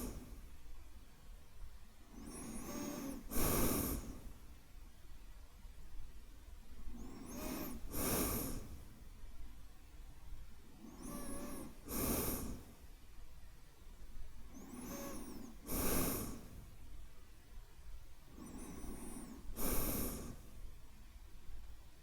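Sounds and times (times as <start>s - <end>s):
man breathing deeply: 0.0s - 0.4s, 2.2s - 4.4s, 7.0s - 9.0s, 10.8s - 12.8s, 14.6s - 16.8s, 18.3s - 20.6s.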